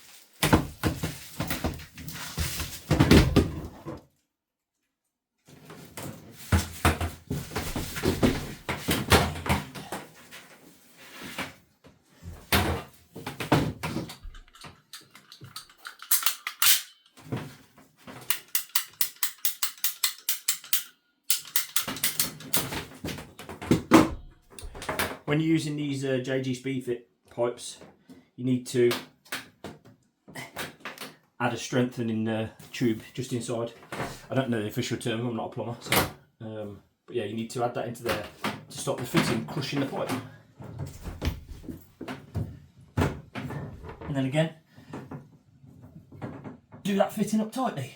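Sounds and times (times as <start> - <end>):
tools and plastic pipe clattering: 0.0 - 4.2, 5.4 - 25.3, 28.9 - 31.2, 37.9 - 47.1.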